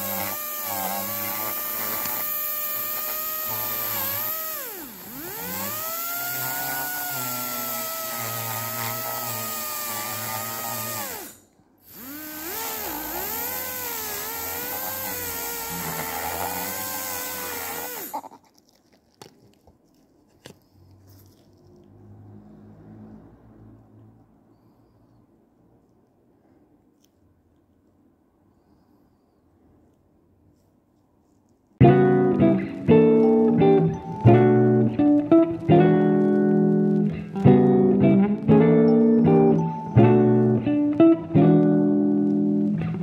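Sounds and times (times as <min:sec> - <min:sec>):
dental drill whining: 0:00.0 - 0:18.2.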